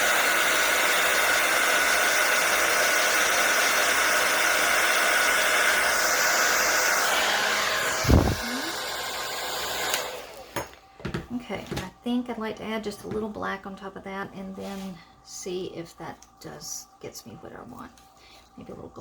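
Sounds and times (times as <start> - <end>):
blow dryer blowing: 0.0 - 10.9.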